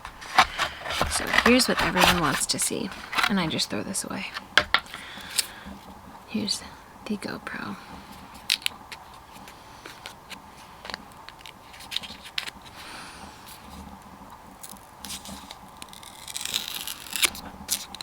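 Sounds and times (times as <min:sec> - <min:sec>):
packaging clicks and crinkles: 0:00.0 - 0:03.6, 0:08.2 - 0:12.9, 0:14.6 - 0:18.0.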